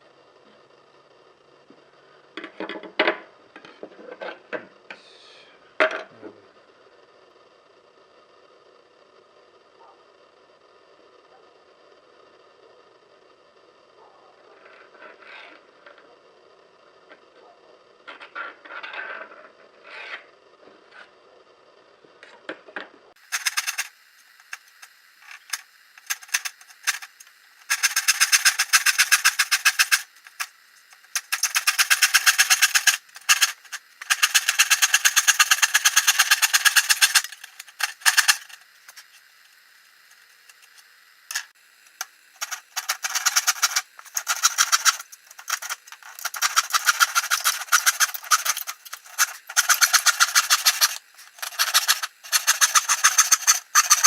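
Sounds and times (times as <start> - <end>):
cutting tool stroking wood: 25.4 - 39.1, 42.4 - 54.0.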